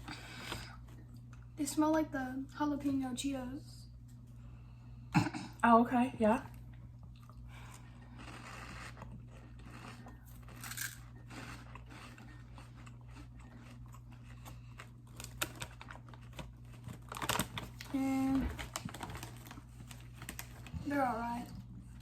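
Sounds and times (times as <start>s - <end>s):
steady low hum: 0.0s - 22.0s
corn puffs crunching: 7.6s - 20.8s.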